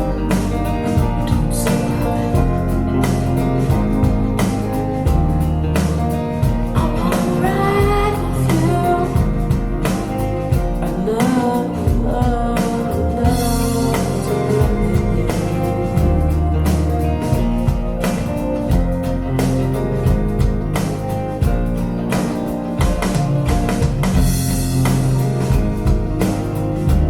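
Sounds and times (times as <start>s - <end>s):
acoustic guitar and bass: 0.0s - 27.0s
person singing: 0.8s - 3.9s, 6.7s - 10.0s, 10.7s - 16.8s.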